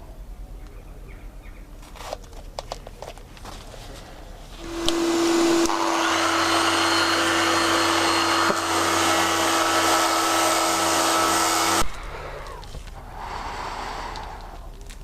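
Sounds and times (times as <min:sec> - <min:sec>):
vacuum motor whine: 0:04.5 - 0:14.7
power sander running: 0:04.6 - 0:14.4.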